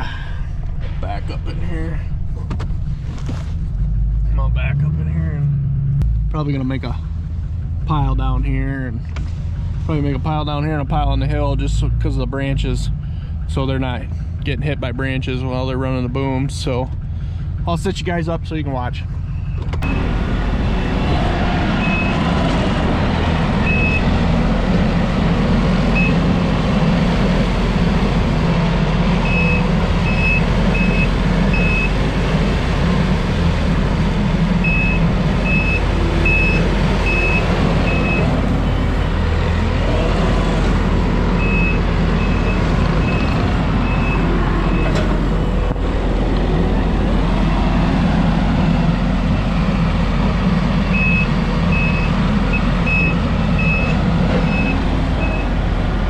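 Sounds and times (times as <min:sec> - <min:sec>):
diesel engine running: 0:00.0 - 0:56.0
backup alarm beeping: 0:23.6 - 0:24.2, 0:26.0 - 0:26.3, 0:29.2 - 0:32.1, 0:34.6 - 0:38.8, 0:41.4 - 0:45.0, 0:50.9 - 0:55.5.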